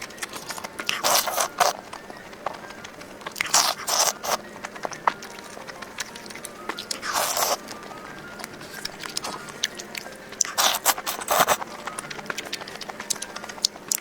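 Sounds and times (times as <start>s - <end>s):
crunching and chewing crisp food: 0.0s - 14.0s
faint background music: 0.0s - 14.0s.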